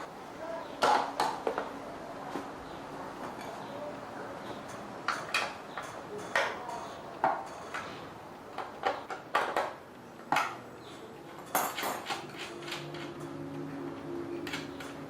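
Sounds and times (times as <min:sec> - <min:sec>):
metal tools clinking: 0:11.0 - 0:13.6.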